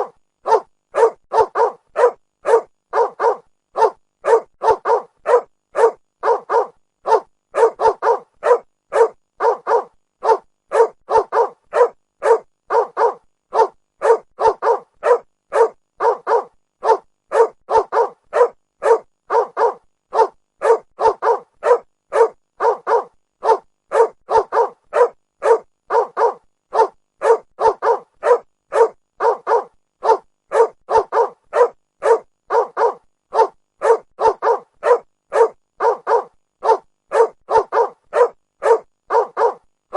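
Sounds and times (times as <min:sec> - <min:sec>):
dog barking rapidly: 0:00.0 - 0:39.6.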